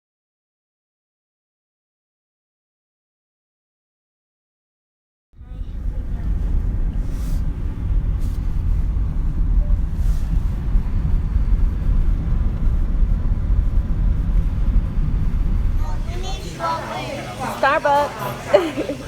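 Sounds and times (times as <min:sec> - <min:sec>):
car cabin road and engine rumble: 0:05.4 - 0:19.0.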